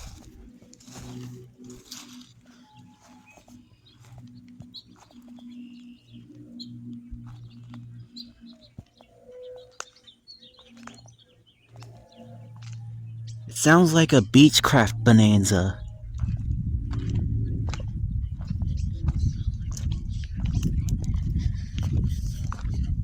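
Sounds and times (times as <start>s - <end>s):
birds chirping: 0.0s - 23.0s
distant propeller plane drone: 0.0s - 23.0s.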